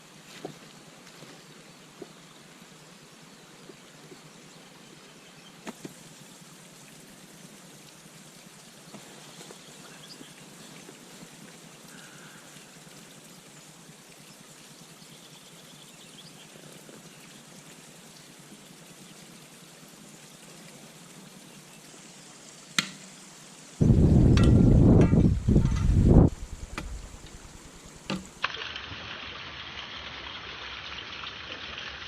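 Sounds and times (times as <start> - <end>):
loud low rumbling burst: 23.8 - 27.1.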